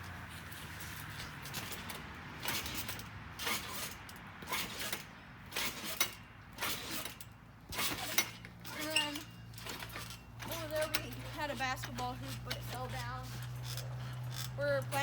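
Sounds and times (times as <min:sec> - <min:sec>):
trampoline springs creaking: 0:00.0 - 0:15.0.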